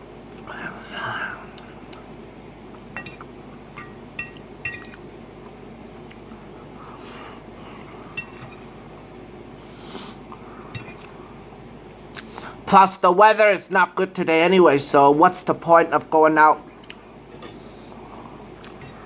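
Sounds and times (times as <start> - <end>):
utensil clinking against dish: 3.8 - 5.0, 8.2 - 8.6.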